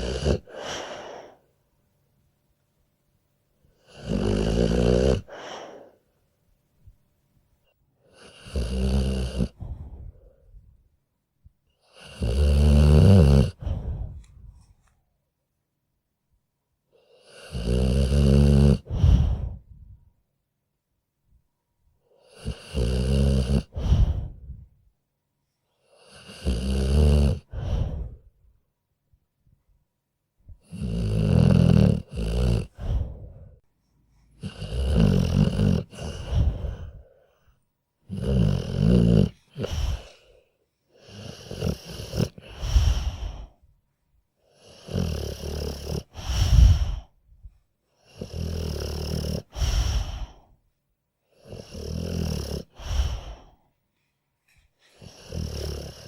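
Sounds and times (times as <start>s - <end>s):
dog snoring: 0.0s - 1.4s, 3.8s - 6.0s, 8.0s - 10.4s, 11.8s - 14.6s, 17.0s - 19.7s, 22.1s - 24.7s, 25.8s - 28.3s, 30.5s - 33.6s, 34.3s - 43.6s, 44.5s - 47.2s, 48.0s - 50.5s, 51.3s - 53.6s, 54.8s - 56.0s.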